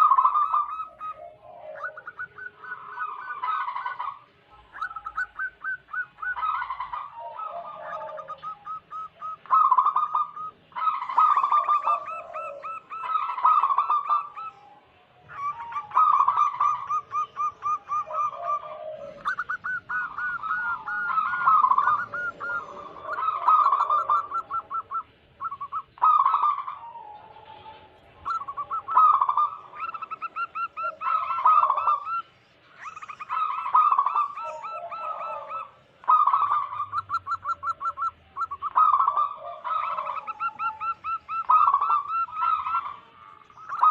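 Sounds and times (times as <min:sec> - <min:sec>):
dove cooing: 0:00.0 - 0:43.9.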